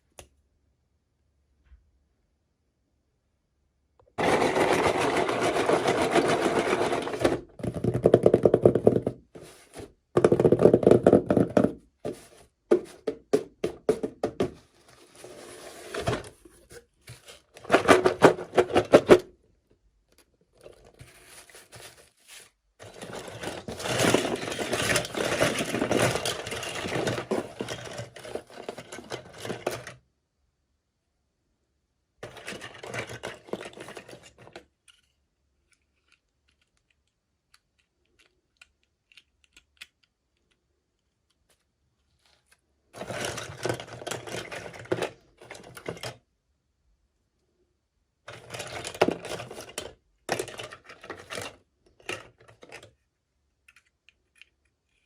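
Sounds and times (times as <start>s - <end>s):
plastic and cardboard packaging rustling: 4.2s - 19.3s, 20.6s - 30.0s, 32.2s - 34.7s, 41.4s - 46.2s, 48.3s - 52.9s.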